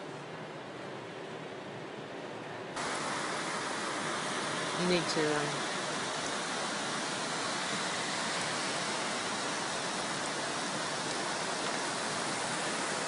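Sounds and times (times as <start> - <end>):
floodwater rushing: 2.8 - 13.0.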